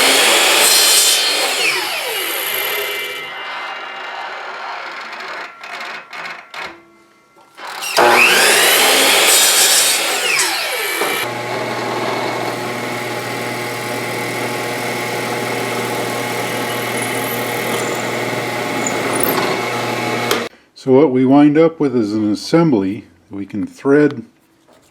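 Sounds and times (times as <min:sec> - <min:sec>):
power tool motor spinning: 0:00.0 - 0:05.8, 0:07.6 - 0:20.5.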